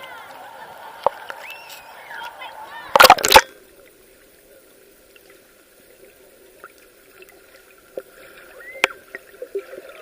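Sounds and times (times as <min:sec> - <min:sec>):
sea water sloshing and gurgling: 0:05.2 - 0:10.0.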